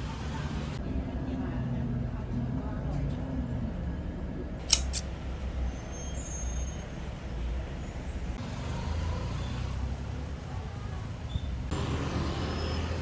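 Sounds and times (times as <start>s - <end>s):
sharp clicks: 4.6s - 5.1s.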